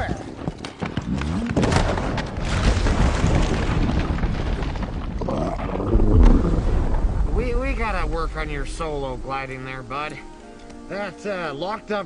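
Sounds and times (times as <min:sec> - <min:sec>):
deep rumbling crash: 0:01.6 - 0:10.3.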